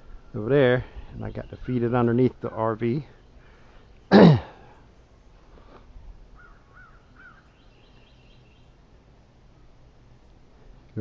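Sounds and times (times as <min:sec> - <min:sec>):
faint small bird chirps: 0:06.4 - 0:08.8.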